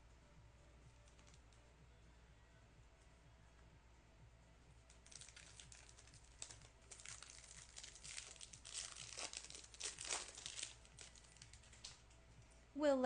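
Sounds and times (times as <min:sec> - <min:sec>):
foil wrapper crinkling and tearing: 0:04.9 - 0:12.0.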